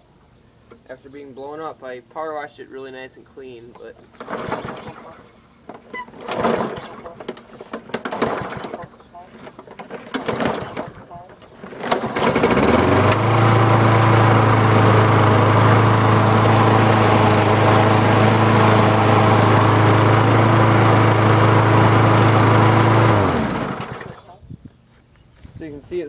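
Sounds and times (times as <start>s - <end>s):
lawnmower engine running: 4.1s - 24.4s
engine winding down: 4.2s - 5.3s, 6.1s - 9.0s, 9.6s - 24.3s.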